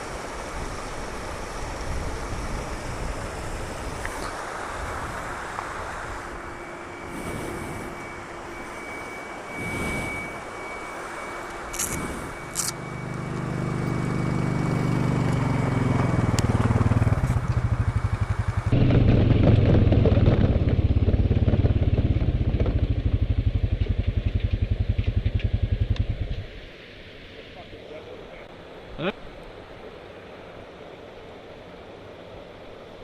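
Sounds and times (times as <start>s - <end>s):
atv engine running: 11.4s - 26.5s.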